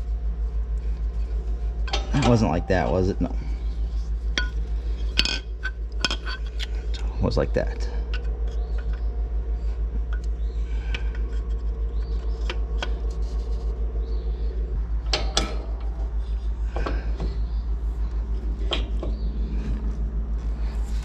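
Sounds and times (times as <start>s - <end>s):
pulsing low hum: 0.0s - 21.0s
metal clinks and knocks: 1.8s - 3.2s, 4.2s - 7.0s.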